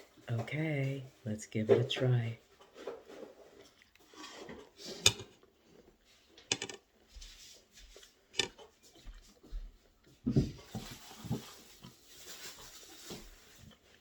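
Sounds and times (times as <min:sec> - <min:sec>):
cutlery scraping on plate: 0:04.2 - 0:05.4.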